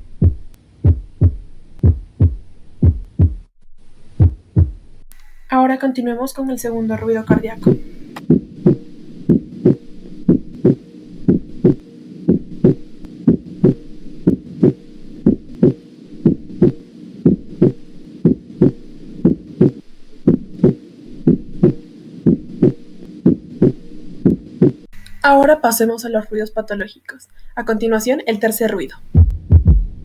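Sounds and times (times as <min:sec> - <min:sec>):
heartbeat lub-dub thumps: 0:00.0 - 0:03.5, 0:04.2 - 0:05.5, 0:06.9 - 0:25.0, 0:29.1 - 0:30.0.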